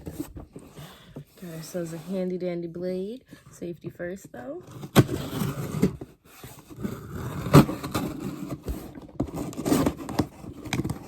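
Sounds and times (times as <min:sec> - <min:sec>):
box cutter slicing tape: 0:04.7 - 0:11.0.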